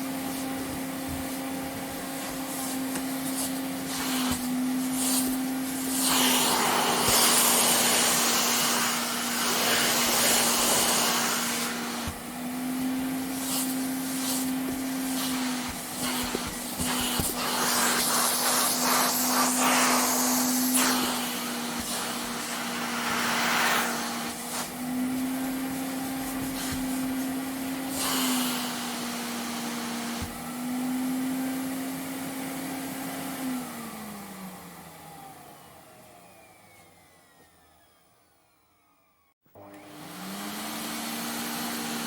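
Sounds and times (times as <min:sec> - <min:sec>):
vacuum cleaner running: 0:00.0 - 0:42.0
vacuum motor winding down: 0:33.4 - 0:42.0.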